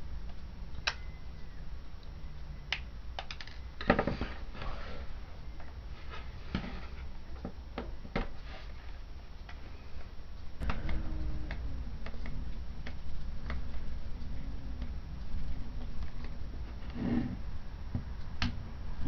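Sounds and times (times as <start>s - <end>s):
low wavering tone: 10.6s - 16.7s.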